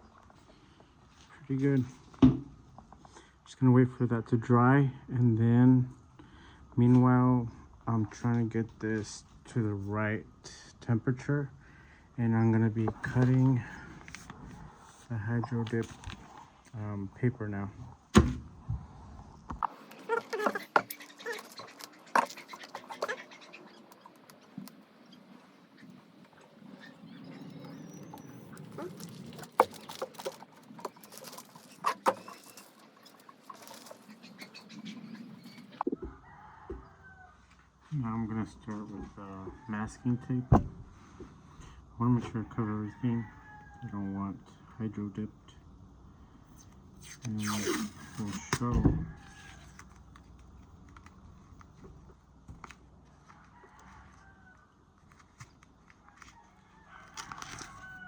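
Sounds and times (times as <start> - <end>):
masking tape clicks and crackles: 19.5 - 36.0.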